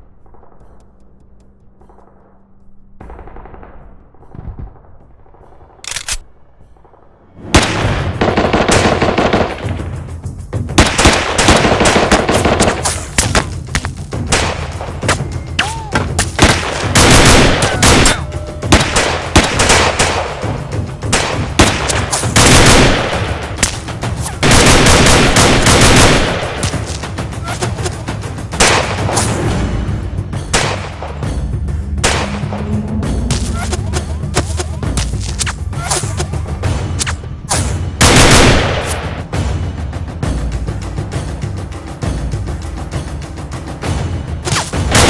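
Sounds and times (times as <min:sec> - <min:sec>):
machine-gun fire: 0:16.4 - 0:18.1, 0:21.2 - 0:23.3, 0:24.4 - 0:26.6, 0:38.0 - 0:38.9.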